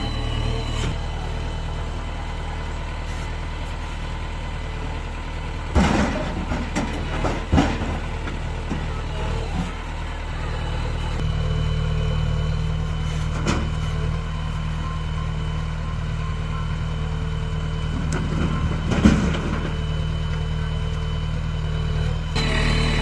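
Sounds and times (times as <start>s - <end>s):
diesel engine running: 0.0s - 23.0s
machinery clunk: 5.7s - 9.8s, 17.9s - 19.9s.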